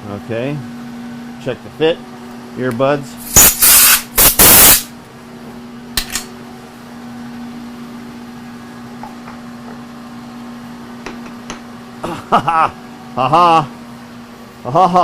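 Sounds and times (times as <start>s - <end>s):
low machine hum: 0.0s - 15.0s
compressed air blow gun blasts: 3.2s - 4.9s.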